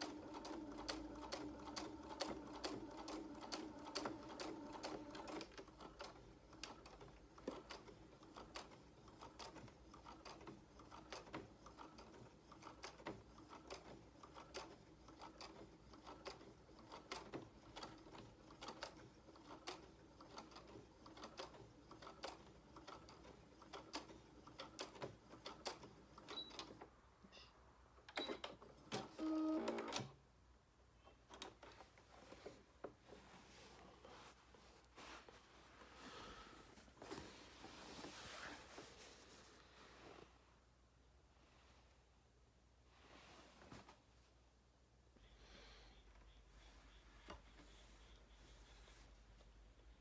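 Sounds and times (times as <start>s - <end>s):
sewing machine motor humming: 0.0s - 26.3s.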